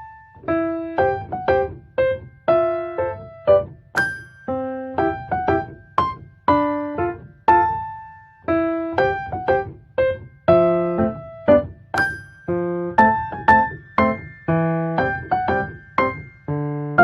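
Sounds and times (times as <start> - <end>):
piano background music: 0.0 - 17.0.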